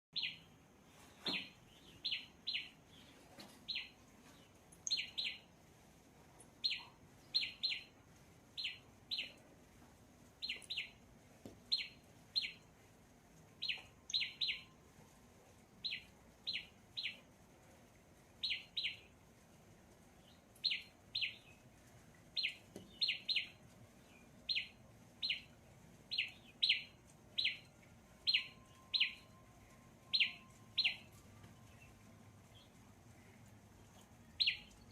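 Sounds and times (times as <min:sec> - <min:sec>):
bird chirping: 0:00.2 - 0:00.6, 0:01.2 - 0:05.5, 0:06.6 - 0:08.0, 0:08.6 - 0:09.4, 0:10.4 - 0:11.0, 0:11.7 - 0:12.7, 0:13.6 - 0:14.8, 0:15.8 - 0:17.2, 0:18.4 - 0:19.1, 0:20.2 - 0:21.6, 0:22.4 - 0:33.6, 0:34.3 - 0:34.9.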